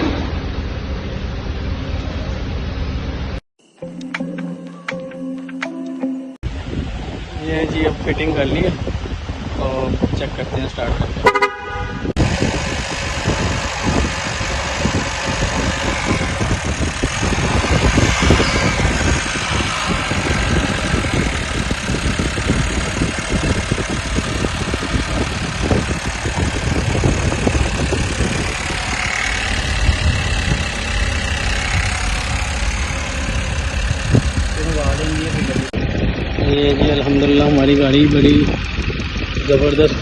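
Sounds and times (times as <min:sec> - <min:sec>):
car engine idling: 0:11.3 - 0:40.0.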